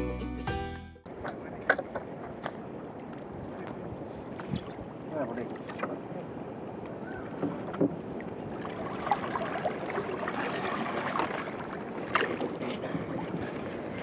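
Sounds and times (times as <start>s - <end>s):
water sloshing and splashing: 4.2s - 6.1s, 7.2s - 14.0s.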